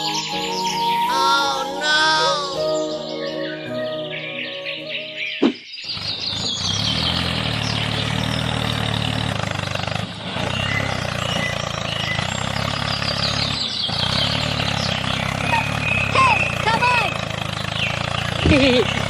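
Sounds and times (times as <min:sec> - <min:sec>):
mini tractor engine running: 0:05.8 - 0:19.0.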